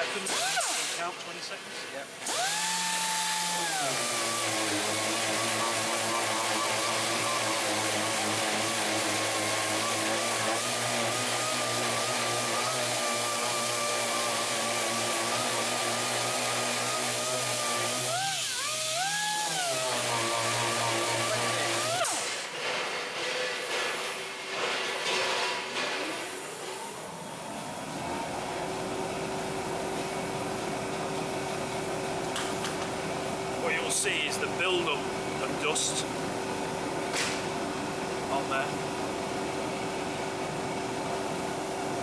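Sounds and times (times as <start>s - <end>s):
power sander on wood: 2.2s - 26.6s, 33.6s - 39.5s.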